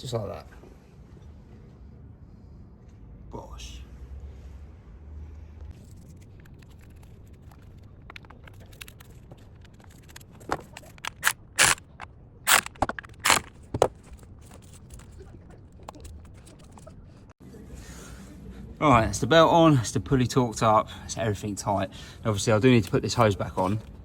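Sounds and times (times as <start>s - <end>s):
hand tools clicking and knocking: 8.0s - 14.8s.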